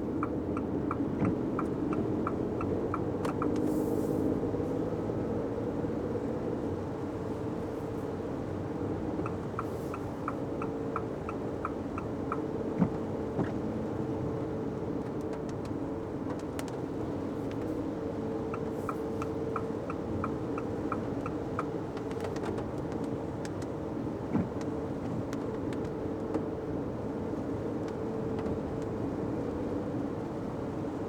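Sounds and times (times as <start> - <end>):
turn signal ticking: 0.0 - 3.7, 8.7 - 13.6, 15.1 - 26.4
car engine and road noise: 0.0 - 31.0.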